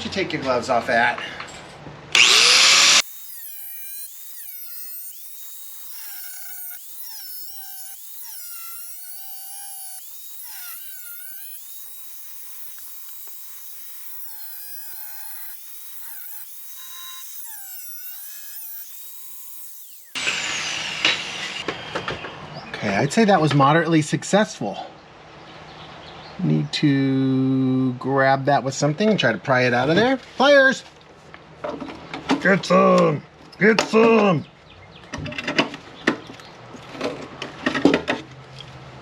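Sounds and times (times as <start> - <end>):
power tool cutting sheet metal: 2.1 - 21.9.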